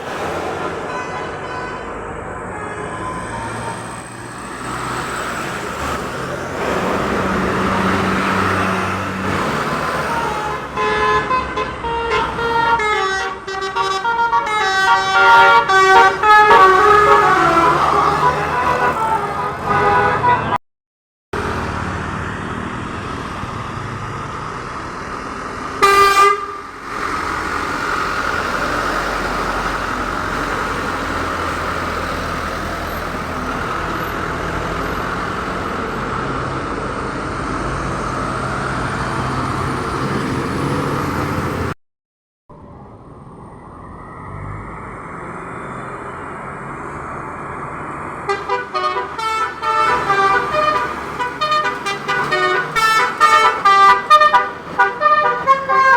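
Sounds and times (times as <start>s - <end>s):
traffic engine and tyre noise: 0.0s - 20.6s, 21.4s - 41.8s, 42.5s - 55.9s
multi-tone horn toots: 0.4s - 3.3s, 6.7s - 20.6s, 25.8s - 26.8s, 48.3s - 55.9s
loud car horn blast: 0.6s - 3.0s, 10.1s - 20.6s, 25.8s - 26.7s, 48.3s - 55.9s.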